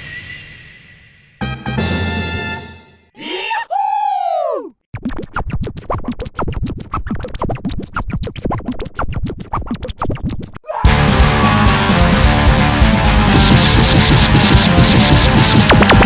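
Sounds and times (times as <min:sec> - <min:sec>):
bending cartoon tone: 0:03.2 - 0:04.7.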